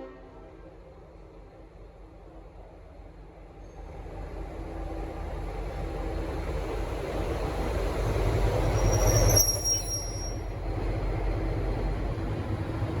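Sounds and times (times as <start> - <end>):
diesel locomotive engine rumble: 0.0 - 13.0
high-pitched wheel squeal: 8.6 - 10.6.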